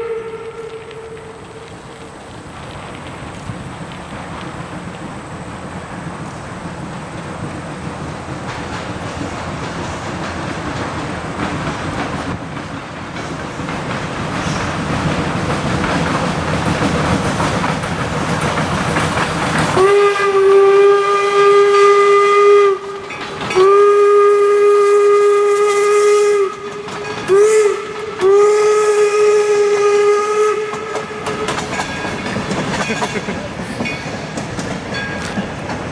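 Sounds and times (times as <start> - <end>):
steam locomotive whistle: 0.0 - 2.3, 19.6 - 32.7
train running noise: 0.0 - 35.9.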